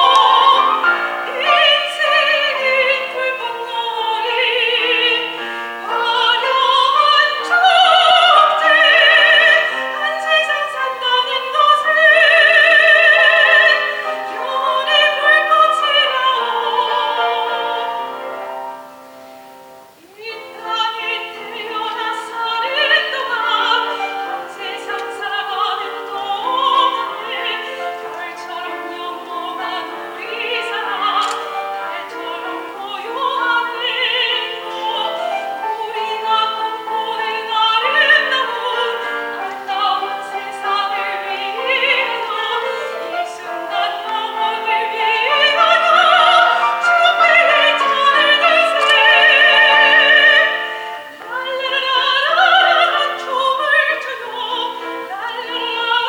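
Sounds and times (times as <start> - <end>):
piano accompaniment: 0.0 - 56.0
soprano singing with vibrato: 0.0 - 56.0.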